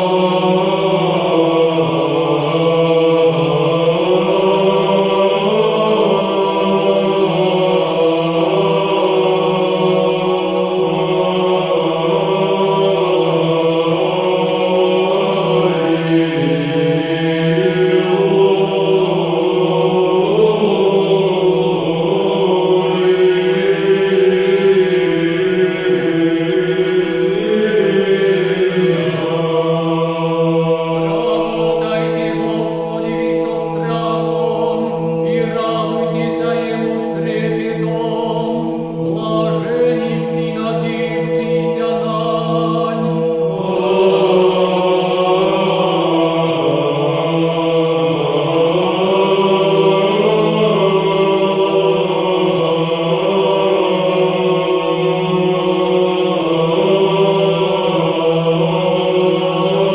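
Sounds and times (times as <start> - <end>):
choir chanting: 0.0 - 59.9
steady held drone: 0.0 - 59.9.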